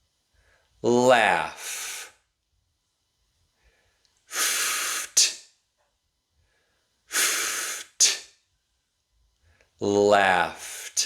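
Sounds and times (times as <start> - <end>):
person making hissing f sound: 1.4 - 2.2, 4.3 - 5.5, 7.1 - 8.4, 10.4 - 11.0.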